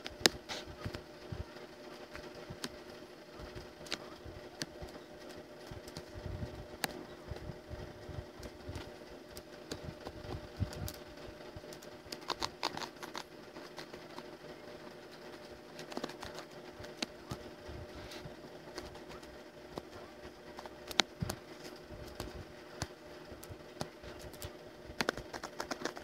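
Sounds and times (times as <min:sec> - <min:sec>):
low electrical hum: 0:00.0 - 0:26.0
drawing clicks and taps: 0:08.4 - 0:11.0, 0:18.2 - 0:26.0.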